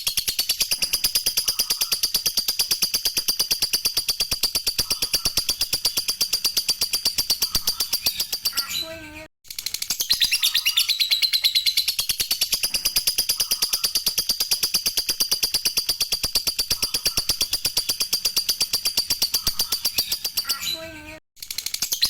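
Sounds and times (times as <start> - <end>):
lovebird chattering: 10.0 - 20.6.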